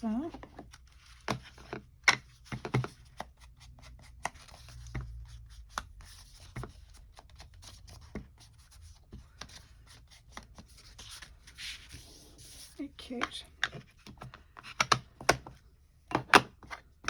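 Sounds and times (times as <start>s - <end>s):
soft scratchy rubbing on paper: 3.4s - 13.2s.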